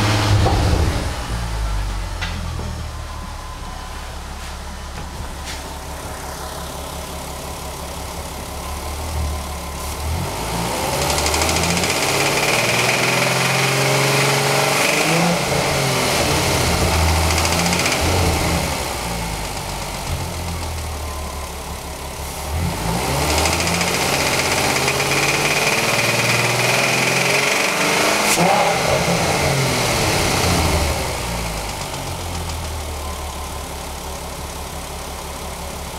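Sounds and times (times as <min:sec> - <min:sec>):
car engine idling and revving: 0:00.0 - 0:35.9
engine knocking: 0:10.9 - 0:22.0, 0:23.1 - 0:27.8, 0:31.4 - 0:35.9.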